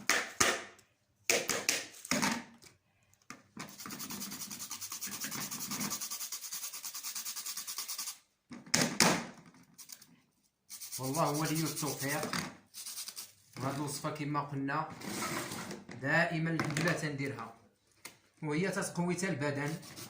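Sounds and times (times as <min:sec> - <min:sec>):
turnip being grated: 0:03.6 - 0:08.2, 0:10.7 - 0:13.5.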